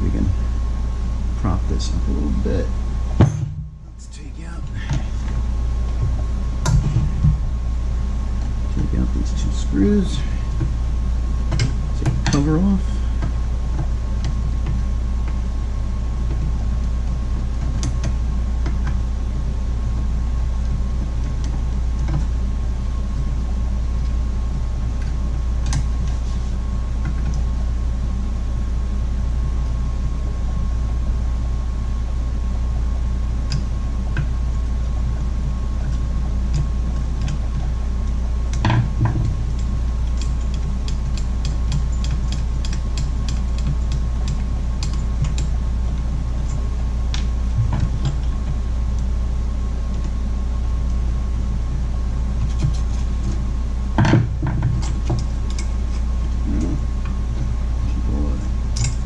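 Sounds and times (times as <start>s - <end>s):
low workshop hum: 0.0s - 59.0s
tools clicking and knocking: 54.0s - 56.0s.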